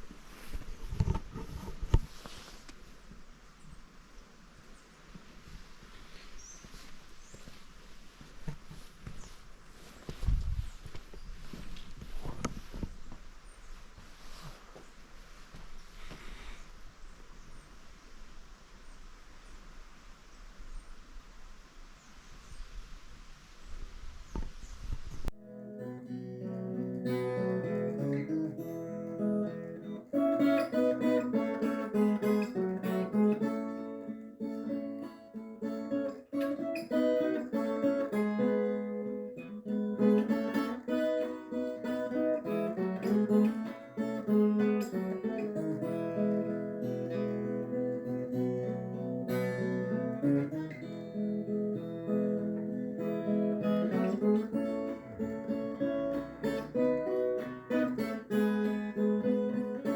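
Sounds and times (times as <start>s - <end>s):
acoustic guitar plucked and strummed: 25.4s - 59.9s.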